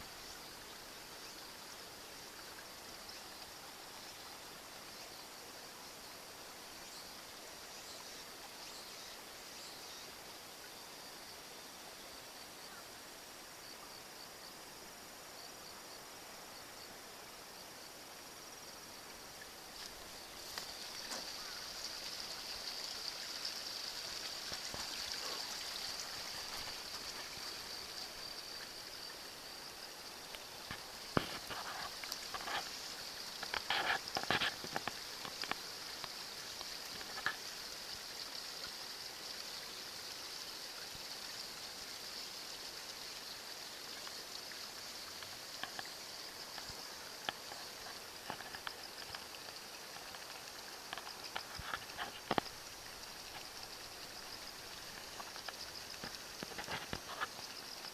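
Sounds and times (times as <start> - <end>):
insects chirping: 0.0 - 57.9
trickling water: 18.0 - 57.9.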